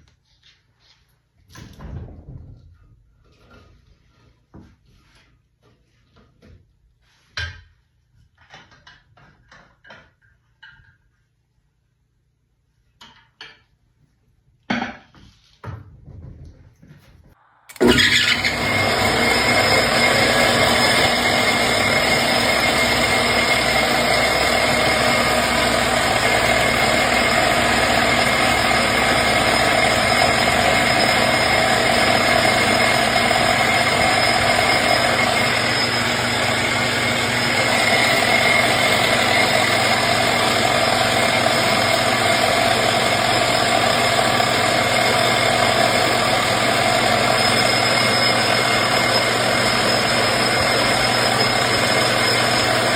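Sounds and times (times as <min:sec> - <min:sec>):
metal lathe motor whine: 0:17.7 - 0:52.9.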